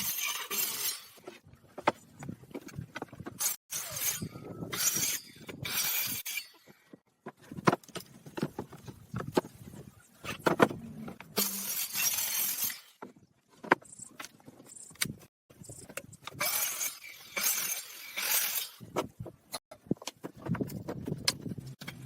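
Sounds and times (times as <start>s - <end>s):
wood and tools knocking: 6.8s - 11.4s.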